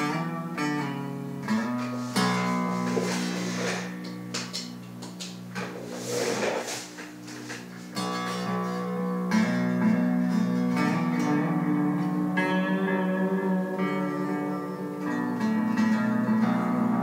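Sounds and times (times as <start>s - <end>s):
clean electric guitar chords: 0.0s - 4.4s, 8.0s - 17.0s.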